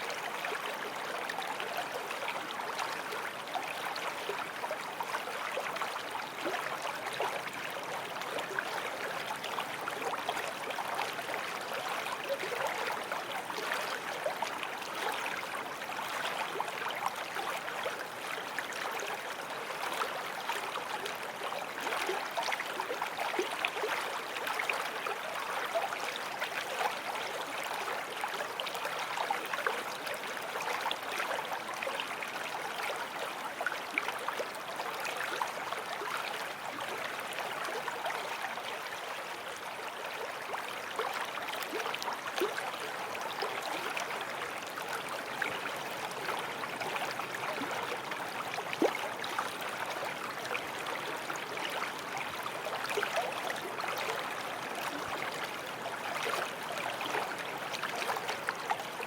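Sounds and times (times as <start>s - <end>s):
stream gurgling over stones: 0.0s - 59.0s.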